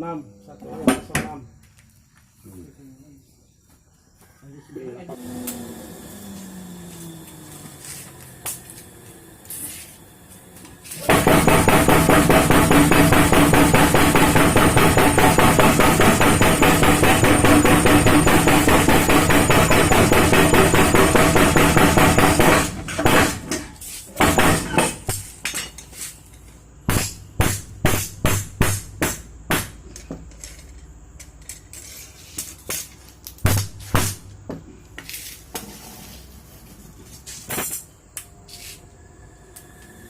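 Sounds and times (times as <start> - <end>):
forging hammer pounding: 11.0 - 23.6, 24.2 - 25.3, 26.9 - 29.8
metal striking metal: 11.0 - 23.6.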